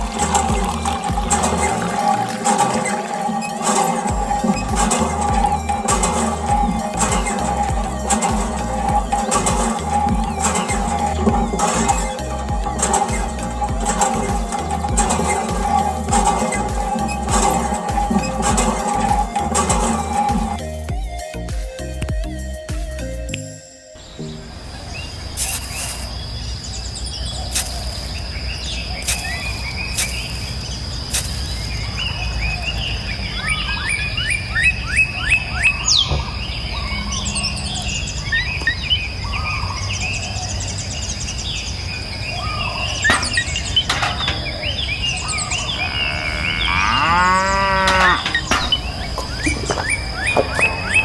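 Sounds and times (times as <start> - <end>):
high-pitched whine: 0.0 - 26.3, 48.4 - 51.0
cow mooing: 45.8 - 49.9
bird chirps: 48.4 - 51.0.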